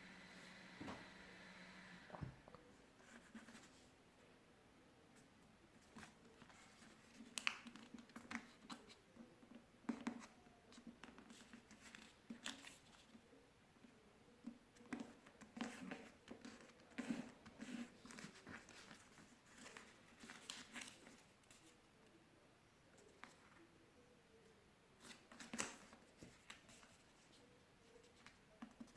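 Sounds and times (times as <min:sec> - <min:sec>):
paper being folded and creased: 0:10.0 - 0:13.2, 0:15.0 - 0:21.8.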